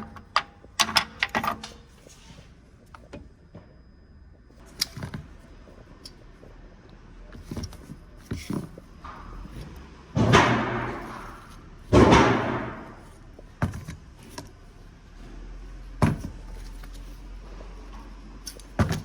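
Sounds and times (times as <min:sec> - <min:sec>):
sharp knocks and slams: 0:10.2 - 0:14.0, 0:18.8 - 0:19.0.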